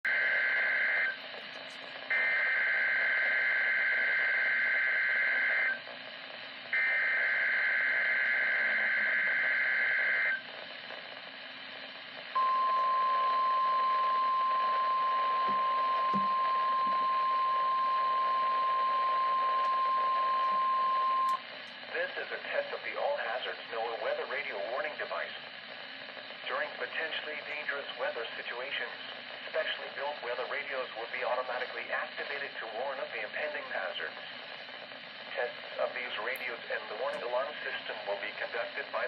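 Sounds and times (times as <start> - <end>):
steady warning alarm tone: 0.1 - 1.2, 2.1 - 5.8, 6.7 - 10.4, 12.4 - 21.4.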